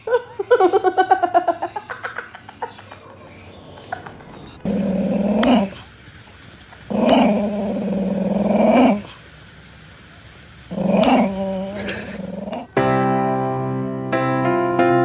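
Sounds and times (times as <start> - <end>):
dog howling: 4.6 - 5.9, 6.9 - 9.2, 10.7 - 12.7.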